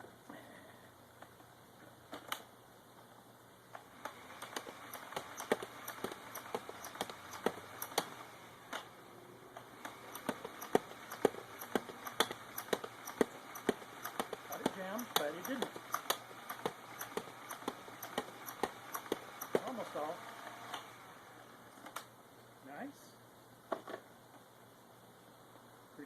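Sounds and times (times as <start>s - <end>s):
foam dart blaster firing clicks: 4.0s - 8.9s, 9.8s - 19.8s.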